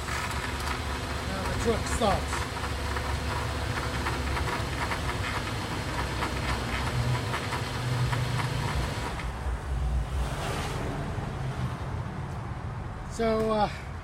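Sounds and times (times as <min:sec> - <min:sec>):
car engine idling: 0:00.0 - 0:09.9.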